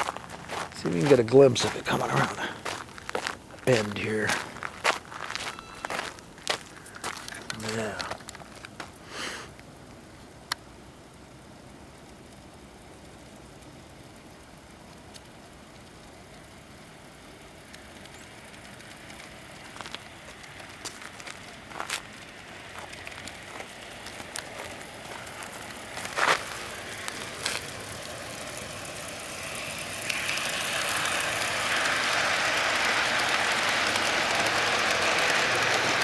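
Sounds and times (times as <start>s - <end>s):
model train wheels rolling on rail: 0.0s - 36.0s
clicks and clacks: 17.6s - 36.0s.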